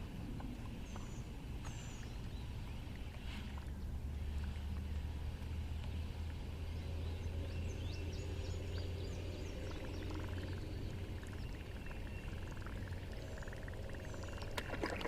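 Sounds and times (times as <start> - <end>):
low steady hum: 0.0 - 15.0
high chirping wildlife calls: 7.5 - 14.5.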